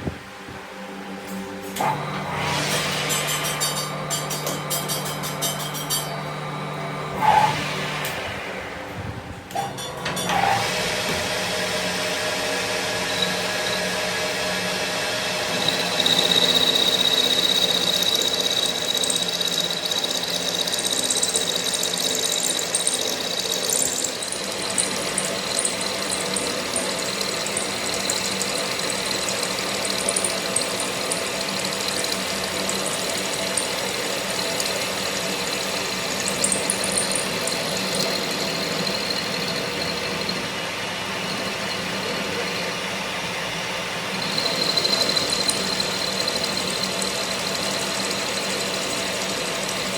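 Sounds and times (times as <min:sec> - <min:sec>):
workshop machine running: 0:00.0 - 0:49.9.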